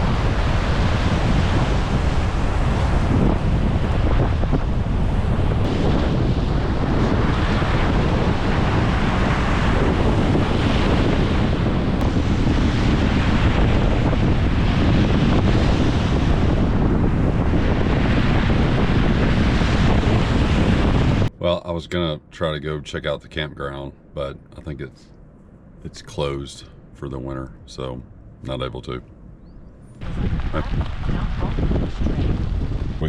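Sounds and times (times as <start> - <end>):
lake surf breaking on shore: 0.0 - 21.3, 30.0 - 33.0
wind buffeting microphone: 0.0 - 22.1, 25.9 - 33.0.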